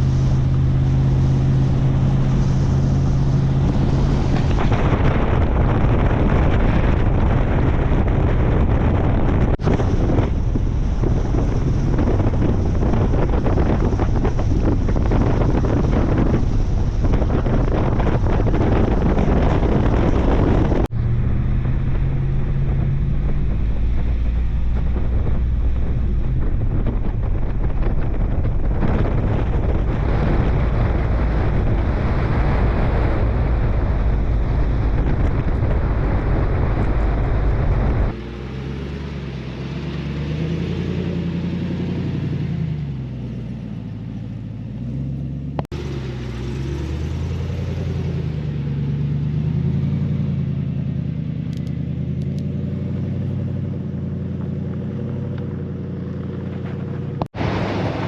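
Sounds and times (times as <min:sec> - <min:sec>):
truck engine and road rumble: 0:00.0 - 0:58.0.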